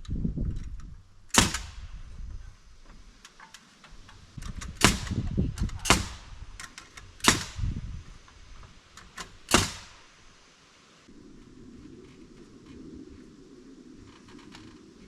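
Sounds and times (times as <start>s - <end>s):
hammer striking nails: 4.8s - 6.2s, 9.5s - 10.0s.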